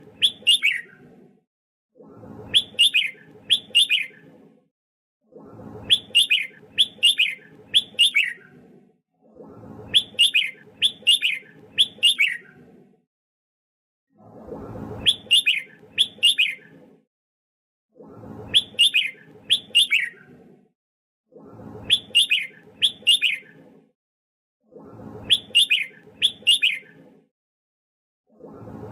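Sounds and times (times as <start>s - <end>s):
bulbul singing whistled notes: 0.2s - 0.9s, 2.6s - 4.2s, 5.9s - 8.4s, 10.0s - 12.4s, 15.1s - 16.6s, 18.6s - 20.2s, 21.9s - 23.5s, 25.3s - 26.9s.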